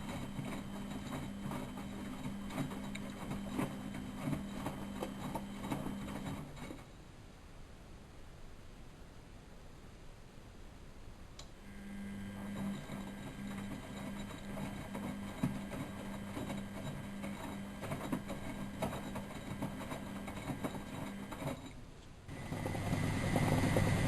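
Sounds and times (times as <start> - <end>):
clicking and rattling inside machine: 0.0 - 6.9, 12.5 - 24.0
washing machine humming: 0.0 - 6.9, 11.6 - 24.0.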